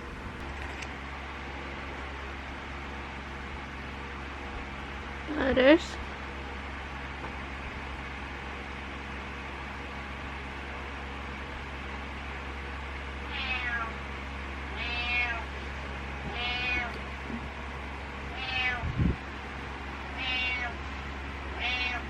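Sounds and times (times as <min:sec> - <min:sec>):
steady low hum: 0:00.0 - 0:22.0
cat meowing: 0:13.3 - 0:13.9, 0:14.7 - 0:15.5, 0:16.3 - 0:17.0, 0:18.3 - 0:19.0, 0:20.1 - 0:20.8, 0:21.6 - 0:22.0.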